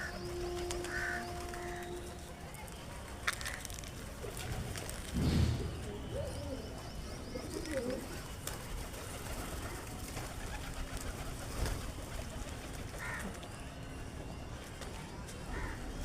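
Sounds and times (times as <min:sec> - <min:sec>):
pigeons cooing: 0:03.4 - 0:13.4.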